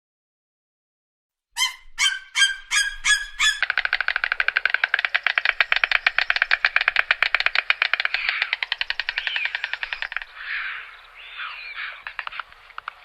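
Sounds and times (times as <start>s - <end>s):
short bird calls: 1.6s - 3.8s
fast pulsing bird call: 1.6s - 4.2s.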